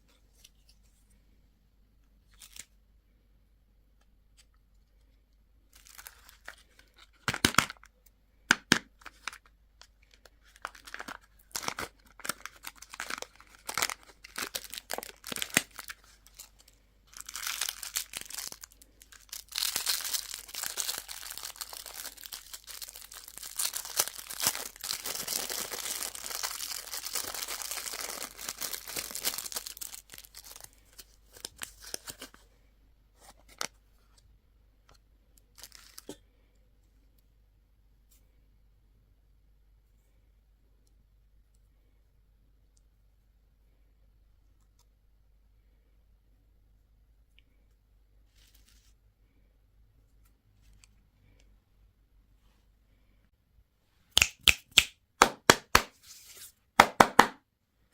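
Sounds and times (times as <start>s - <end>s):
wrapper tearing and crinkling: 10.5s - 32.3s.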